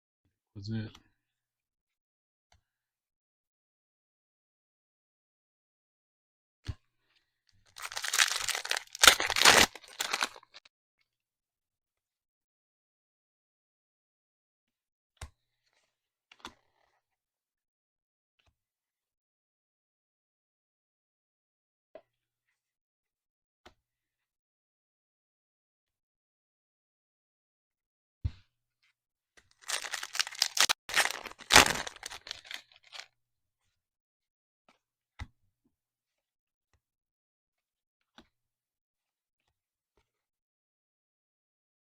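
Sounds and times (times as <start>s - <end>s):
wrapper crinkling: 7.7s - 10.6s, 29.6s - 33.1s.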